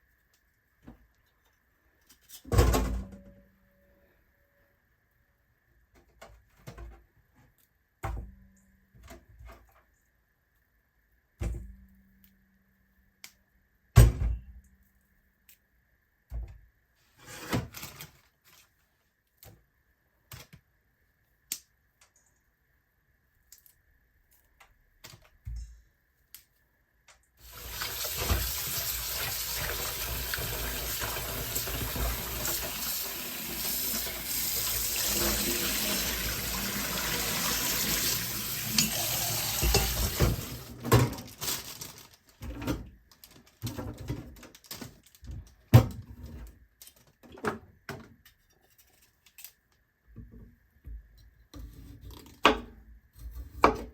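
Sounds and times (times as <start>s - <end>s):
water running into a sink: 27.4s - 40.8s.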